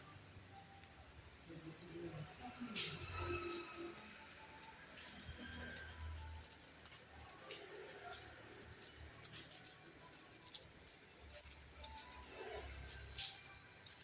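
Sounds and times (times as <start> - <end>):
plastic and cardboard rustling: 2.8 - 14.0.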